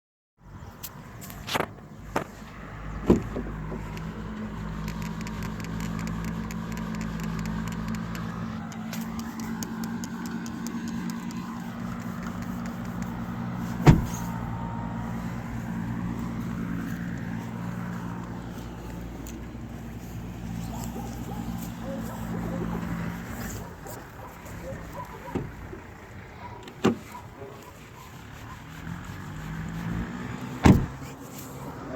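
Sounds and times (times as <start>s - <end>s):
car engine humming: 1.6s - 31.9s
car creaking and squeaking: 3.0s - 14.6s, 22.1s - 31.3s.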